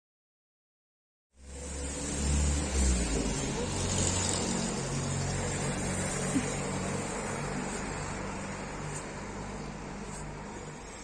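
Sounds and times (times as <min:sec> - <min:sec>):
vehicle engine humming: 0:01.4 - 0:11.0.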